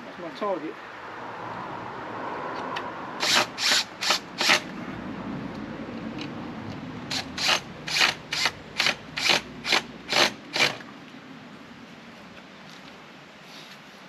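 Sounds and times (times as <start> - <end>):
ratchet clicking: 7.1 - 10.8.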